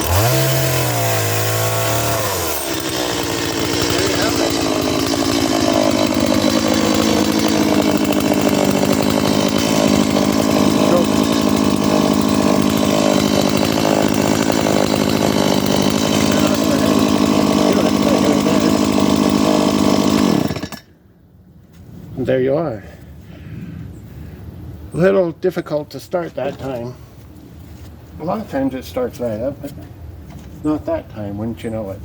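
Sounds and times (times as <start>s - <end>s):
chainsaw engine running: 0.0s - 20.8s.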